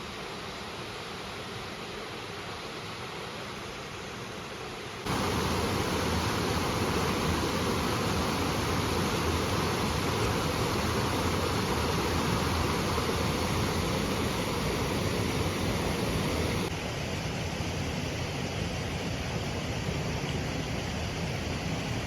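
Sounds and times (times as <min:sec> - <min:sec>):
river water rushing: 0:04.8 - 0:16.7.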